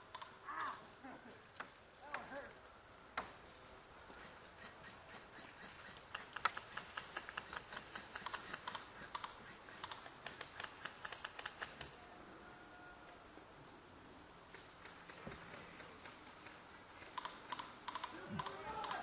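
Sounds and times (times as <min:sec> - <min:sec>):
airsoft guns firing: 0:17.0 - 0:19.0.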